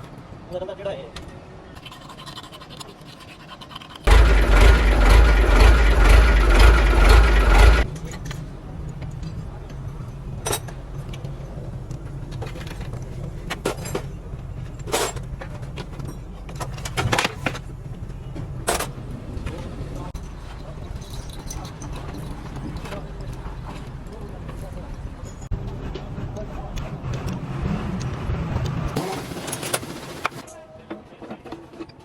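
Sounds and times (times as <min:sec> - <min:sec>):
low hum: 0:04.1 - 0:12.0
heavy truck engine running: 0:04.1 - 0:12.2.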